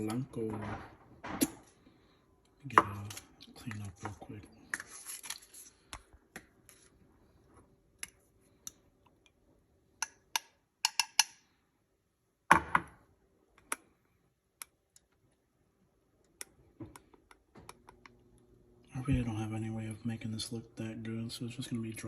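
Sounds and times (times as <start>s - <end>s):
kitchen items clicking and tapping: 10.0s - 11.4s.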